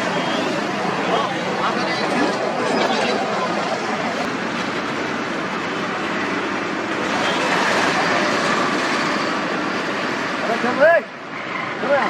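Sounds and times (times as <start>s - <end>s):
vehicles passing on a bridge: 0.0s - 12.0s.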